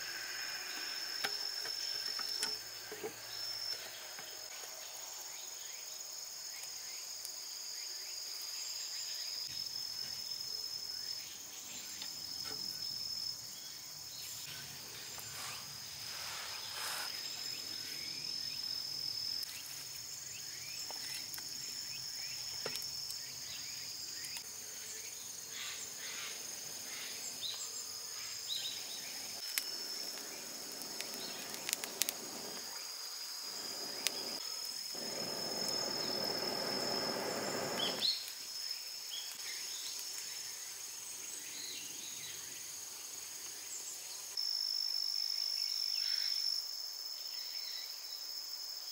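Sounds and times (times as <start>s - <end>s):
insects trilling: 0.0s - 48.8s
sharp clicks and crackles: 29.4s - 32.7s.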